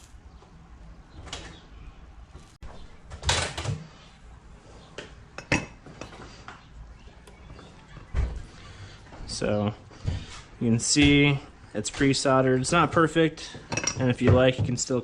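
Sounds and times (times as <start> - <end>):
metal tools clattering on workbench: 13.6 - 14.4.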